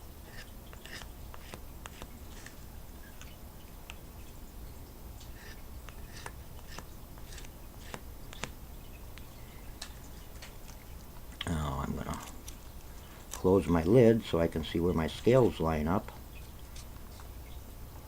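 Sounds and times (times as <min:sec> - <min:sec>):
small clicks and light scraping: 0:00.3 - 0:04.0, 0:05.2 - 0:13.5, 0:16.0 - 0:17.6.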